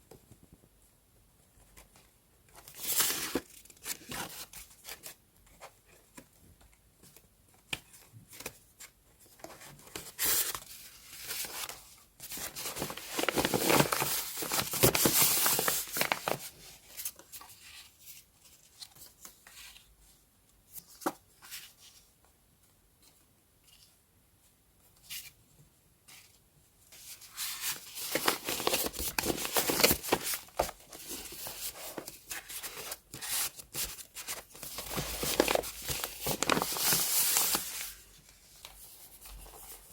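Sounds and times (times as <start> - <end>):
paper tearing and rustling: 12.4 - 16.5, 27.3 - 38.0.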